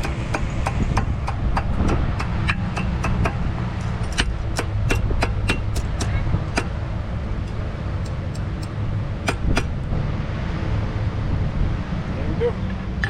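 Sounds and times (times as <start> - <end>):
hammer striking iron on anvil: 0.0 - 6.8, 7.4 - 9.9
low rumble: 0.0 - 13.0.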